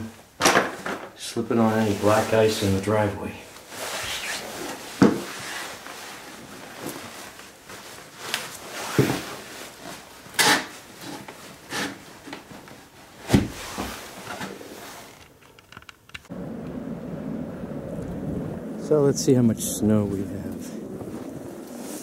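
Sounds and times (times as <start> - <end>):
low rushing sound: 16.3 - 22.0.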